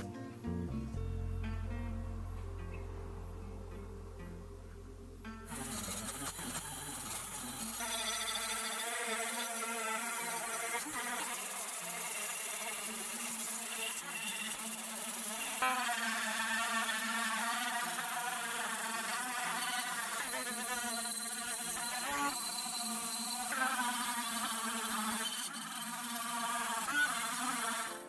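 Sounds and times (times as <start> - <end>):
small electric motor whining: 5.5 - 28.0.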